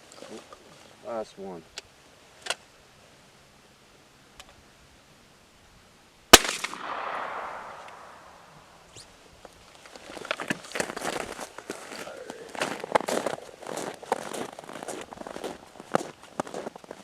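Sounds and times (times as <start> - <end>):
shotgun blast with echo: 6.4 - 8.5.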